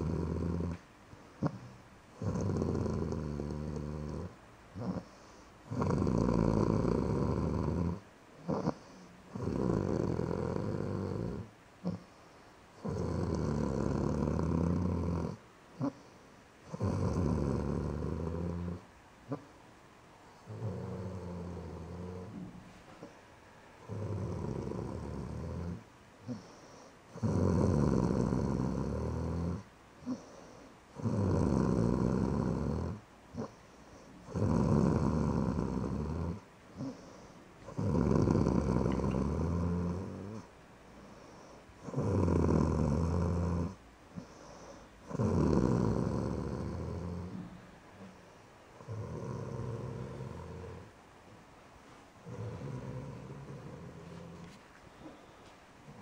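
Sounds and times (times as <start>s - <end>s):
person snoring: 0.0s - 0.8s, 1.4s - 12.0s, 12.8s - 16.0s, 16.7s - 18.8s, 23.9s - 33.6s, 34.3s - 40.4s, 41.3s - 47.5s, 48.8s - 50.8s, 52.2s - 54.5s.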